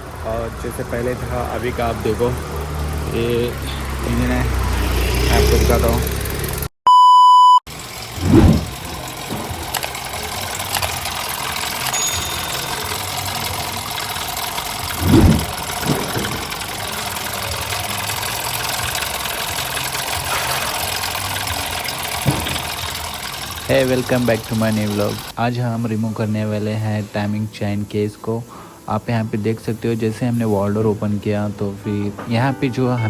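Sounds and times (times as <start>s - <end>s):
car engine idling: 0.0s - 6.7s, 7.7s - 25.4s
loud electronic beep: 6.9s - 7.6s, 11.8s - 13.1s.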